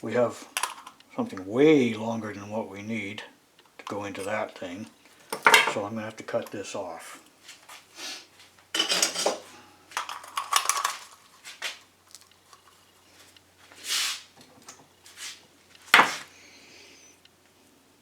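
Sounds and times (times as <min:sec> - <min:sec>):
metal tools clinking: 0:00.5 - 0:01.0, 0:03.9 - 0:06.6, 0:08.8 - 0:11.3.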